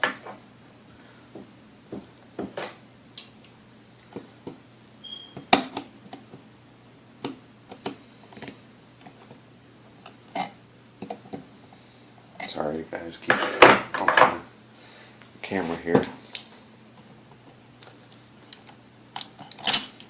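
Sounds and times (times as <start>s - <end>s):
brief squeak: 5.0s - 5.4s.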